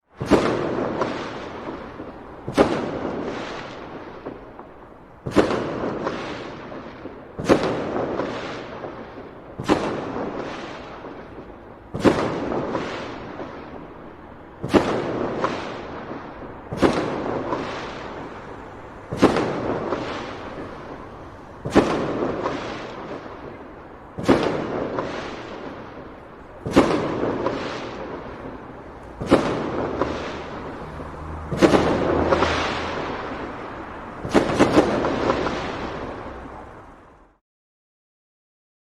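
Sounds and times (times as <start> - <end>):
firework shells bursting: 14.7 - 36.8.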